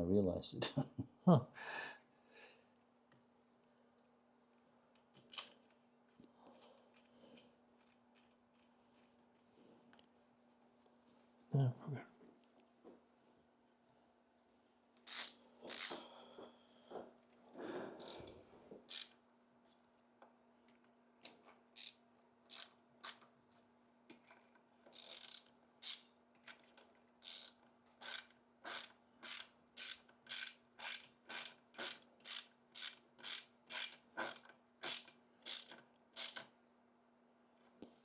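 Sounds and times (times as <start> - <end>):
ratchet wrench clicking: 15.1 - 16.0, 18.0 - 19.2, 21.8 - 23.2, 24.9 - 36.5.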